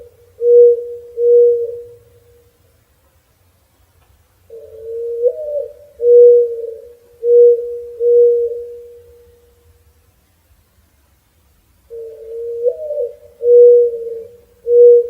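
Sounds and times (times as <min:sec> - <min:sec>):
mourning dove cooing: 0:00.0 - 0:02.6, 0:04.4 - 0:09.9, 0:11.8 - 0:15.0.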